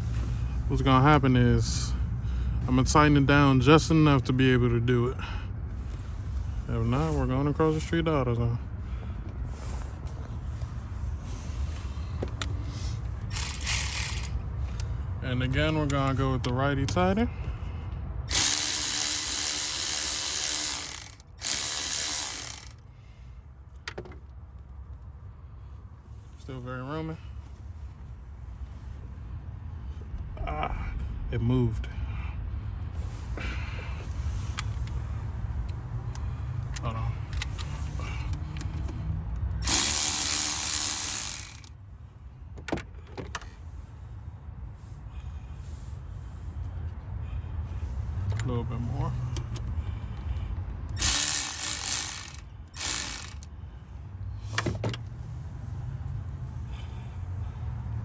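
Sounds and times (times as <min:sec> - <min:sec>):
cordless electric ratchet running: 0:13.2 - 0:14.4, 0:18.3 - 0:22.8, 0:39.6 - 0:41.7, 0:50.9 - 0:53.5
sharp clicks: 0:18.3 - 0:22.8, 0:39.6 - 0:41.7, 0:50.9 - 0:53.5.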